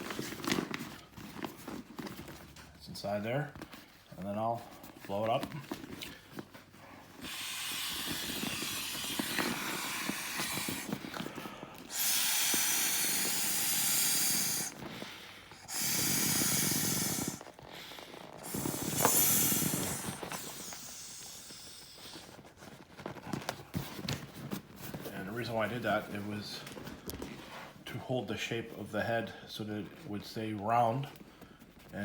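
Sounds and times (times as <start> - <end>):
air blown into inflatable toy: 7.2 - 17.6, 18.4 - 22.3.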